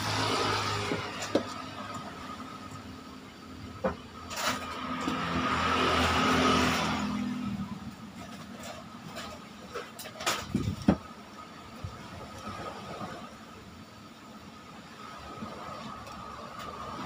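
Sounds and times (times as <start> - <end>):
motor vehicle passing by: 0.0 - 2.7, 4.5 - 8.2.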